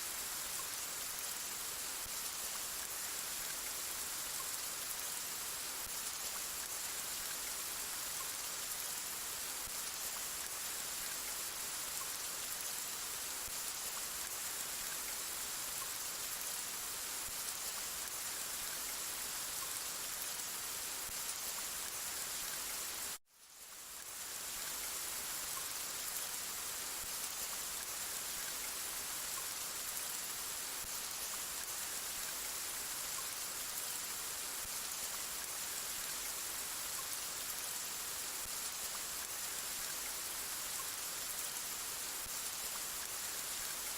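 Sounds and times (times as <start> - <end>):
steady rain: 0.0 - 43.9.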